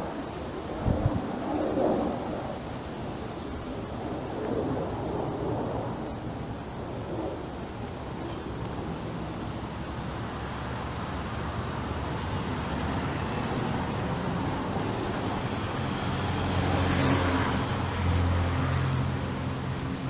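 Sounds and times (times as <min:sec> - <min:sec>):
road traffic noise: 0:07.4 - 0:20.0
vehicle passing close by: 0:11.7 - 0:20.0.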